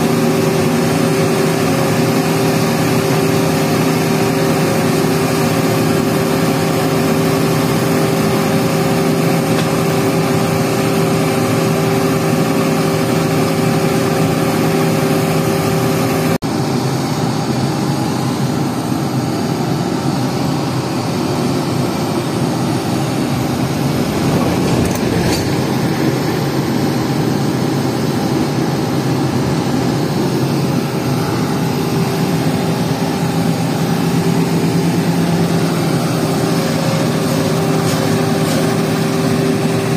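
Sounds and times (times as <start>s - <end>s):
heavy machinery engine running: 0.0s - 39.9s.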